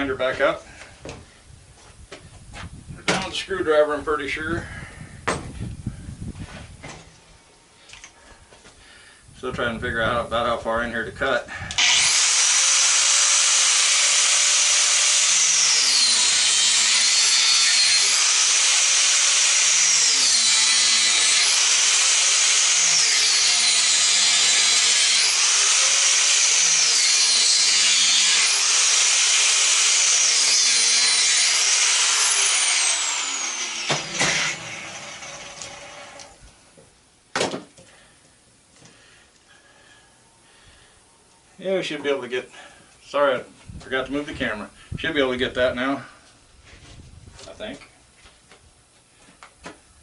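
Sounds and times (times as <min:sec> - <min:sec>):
angle grinder cutting metal: 0:11.7 - 0:36.4
angle grinder spinning down: 0:11.7 - 0:36.4.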